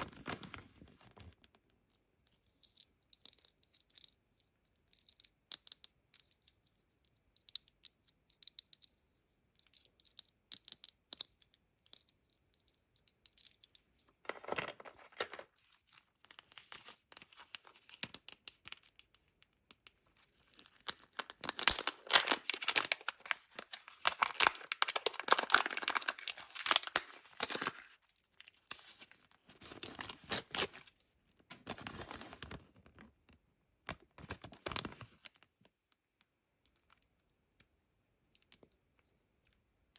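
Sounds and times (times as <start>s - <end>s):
plastic packaging clicks and taps: 14.2s - 15.5s, 20.5s - 27.8s
wrappers tearing and crinkling: 20.8s - 28.0s.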